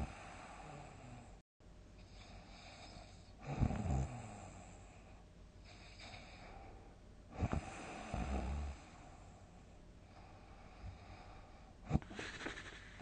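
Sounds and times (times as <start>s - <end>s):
soft breathing hiss: 0.0s - 1.4s, 4.1s - 13.0s
person snoring loudly: 7.4s - 8.9s.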